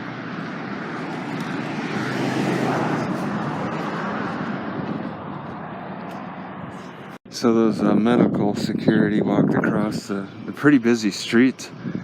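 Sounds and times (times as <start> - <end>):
vehicle passing: 0.0 - 7.2.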